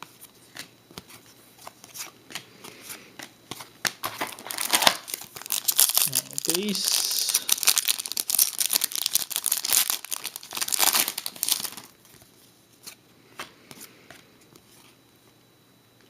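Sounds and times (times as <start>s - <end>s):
foil wrapper crinkling and tearing: 4.0s - 12.0s.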